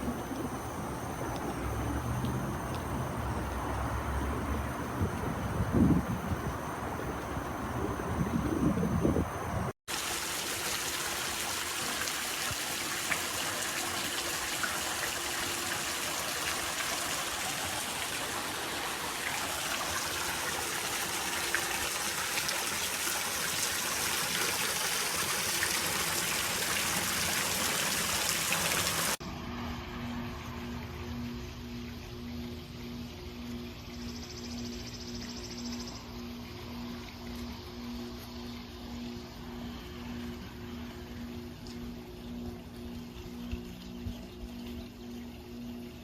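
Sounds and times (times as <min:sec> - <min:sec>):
pool water trickling and splashing: 0:00.0 - 0:08.4, 0:09.9 - 0:29.2, 0:30.7 - 0:46.0
low pulsing tone: 0:29.2 - 0:46.0.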